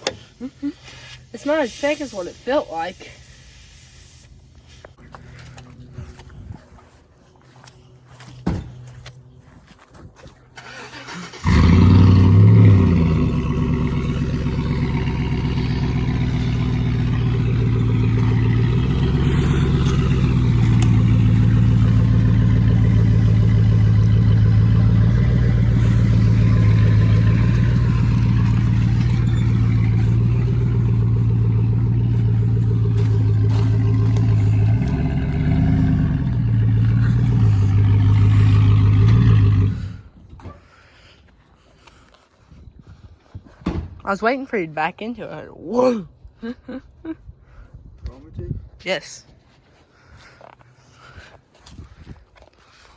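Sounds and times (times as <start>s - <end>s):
vehicle engine starting and idling: 10.5s - 40.6s.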